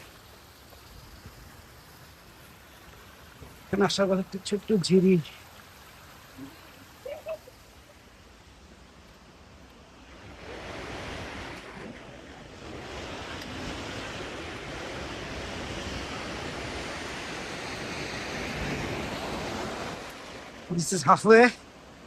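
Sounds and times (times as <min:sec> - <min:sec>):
mountain stream rushing: 0:00.0 - 0:22.0.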